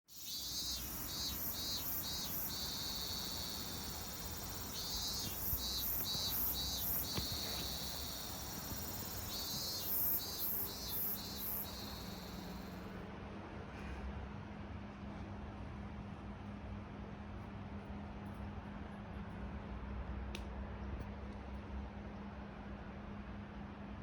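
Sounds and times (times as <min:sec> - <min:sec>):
insect chirping and trilling: 0:00.1 - 0:12.9.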